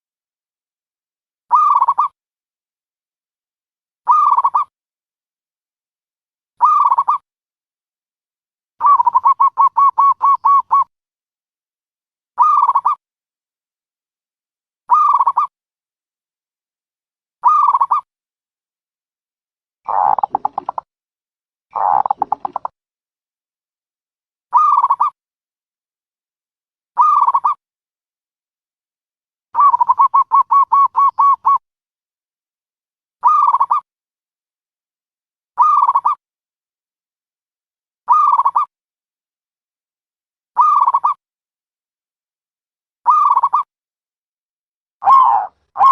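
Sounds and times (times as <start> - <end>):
dove calling: 1.5 - 2.1, 8.8 - 10.9, 19.9 - 20.8, 21.8 - 22.7, 29.6 - 31.6, 33.2 - 33.8, 43.1 - 43.7, 45.0 - 45.9.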